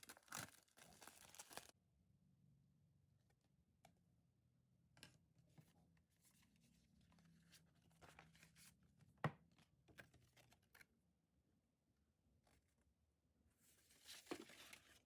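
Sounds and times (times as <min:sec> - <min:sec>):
faint rustling of packaging: 0:00.0 - 0:01.7, 0:05.5 - 0:10.9, 0:13.6 - 0:15.0.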